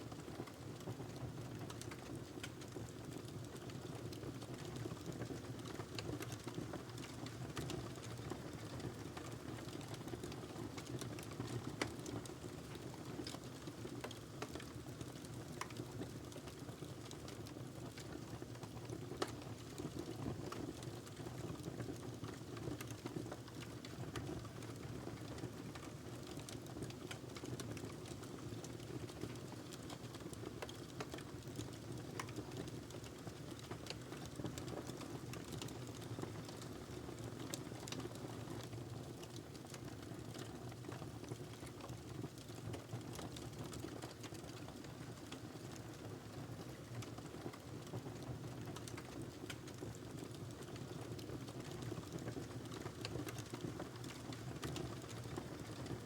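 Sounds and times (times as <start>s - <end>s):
log crackling and popping: 29.2s - 38.1s, 48.6s - 55.8s.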